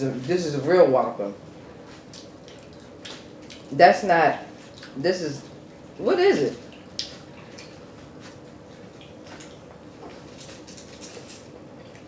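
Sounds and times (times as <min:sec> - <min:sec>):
chewing and lip-smacking: 0:01.9 - 0:05.9, 0:06.5 - 0:12.0.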